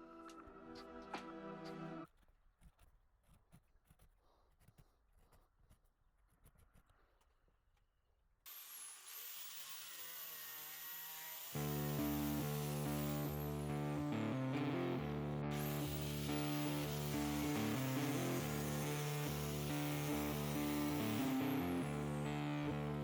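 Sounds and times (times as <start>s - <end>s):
faint clicks and rubbing: 2.0s - 8.0s
music with deep bass: 11.8s - 19.2s, 19.8s - 23.0s.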